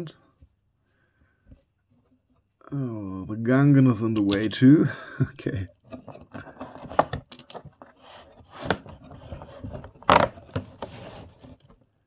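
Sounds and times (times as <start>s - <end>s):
packaging scraping and rustling: 5.9s - 11.8s.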